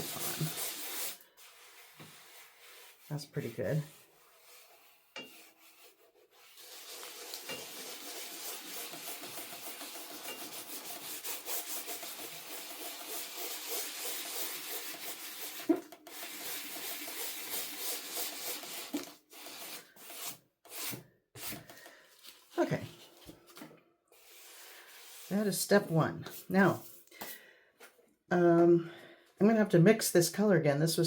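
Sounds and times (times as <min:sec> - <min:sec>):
sandpaper rubbing on canvas: 0:00.0 - 0:21.6, 0:24.2 - 0:25.5.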